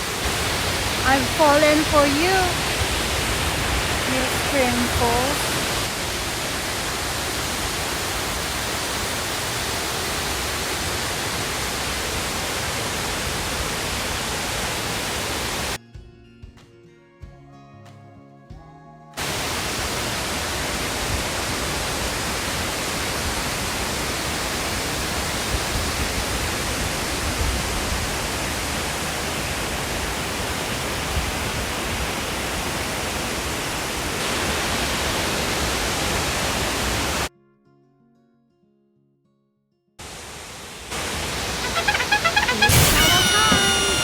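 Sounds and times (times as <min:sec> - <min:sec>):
waterfall rushing: 0:00.0 - 0:15.8, 0:19.2 - 0:37.3, 0:40.0 - 0:44.0
soft music: 0:01.0 - 0:02.6, 0:15.8 - 0:19.2, 0:41.6 - 0:44.0.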